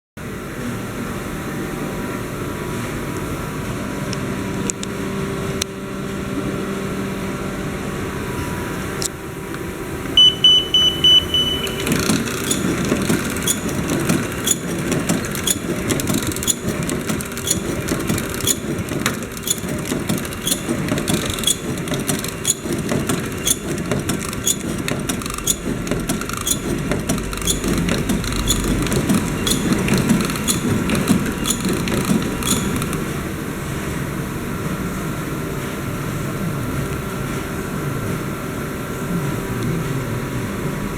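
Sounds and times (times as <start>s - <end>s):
machine hum: 2.0s - 35.7s
short high beep: 10.2s - 12.6s
rhythmic mechanical clatter: 10.2s - 33.7s.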